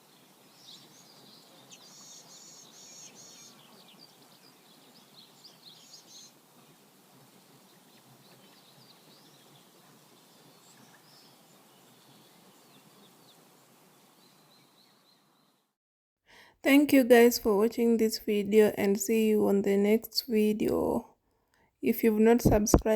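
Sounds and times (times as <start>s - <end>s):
small birds chirping: 0.0s - 6.7s, 7.5s - 15.6s.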